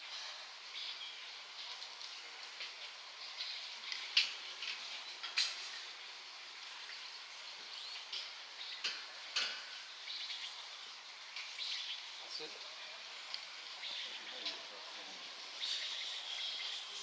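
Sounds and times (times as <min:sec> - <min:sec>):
faint bird chirps: 0:15.5 - 0:17.0.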